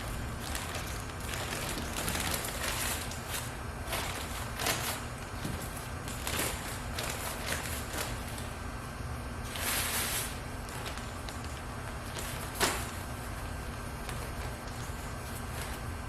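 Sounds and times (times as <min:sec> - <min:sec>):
steady low hum: 0:00.0 - 0:16.0
rustling scrape: 0:09.4 - 0:11.0.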